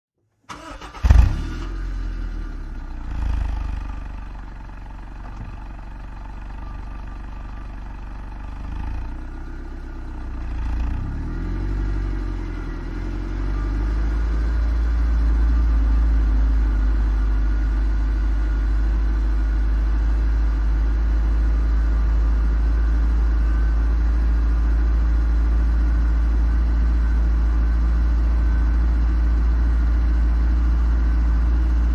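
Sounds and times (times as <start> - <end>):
car engine starting and revving: 0.5 - 18.9.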